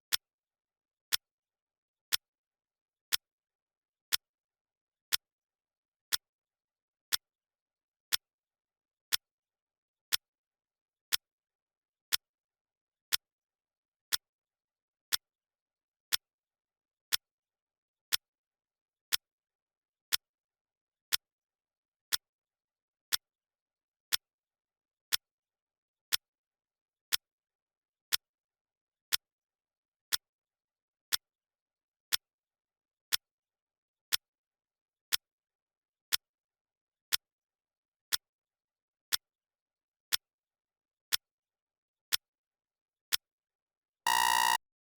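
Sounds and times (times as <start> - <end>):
clock ticking: 44.1 - 44.6.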